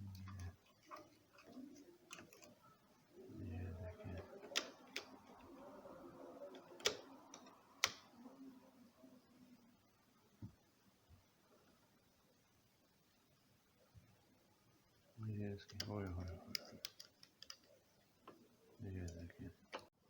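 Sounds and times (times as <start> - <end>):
sharp clicks: 6.6 - 8.1.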